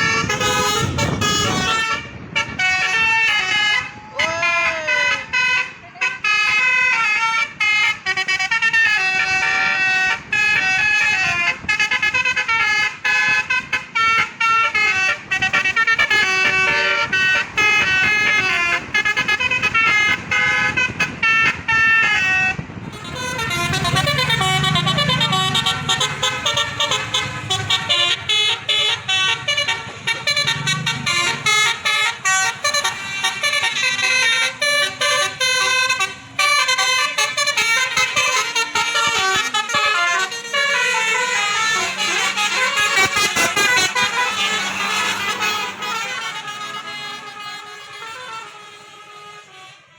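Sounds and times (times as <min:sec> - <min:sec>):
low engine rumble: 0:00.0 - 0:49.8
musical air horn melody: 0:00.0 - 0:49.9.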